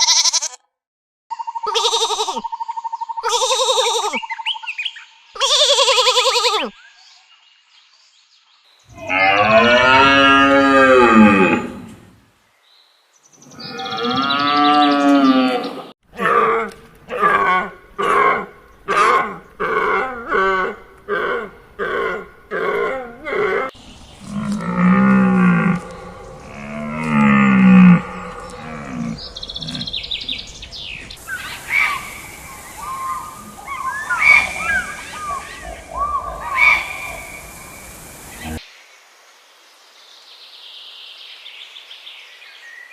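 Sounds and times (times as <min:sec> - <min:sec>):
long low animal calls: 0:13.5 - 0:38.6
chirping calls: 0:23.7 - 0:38.6
steady hiss: 0:23.7 - 0:41.6.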